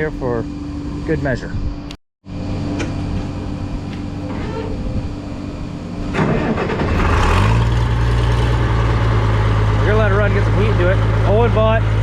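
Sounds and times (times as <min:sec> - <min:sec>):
steady machine hum: 0:00.0 - 0:07.0
tractor engine cranking and idling: 0:06.0 - 0:12.0.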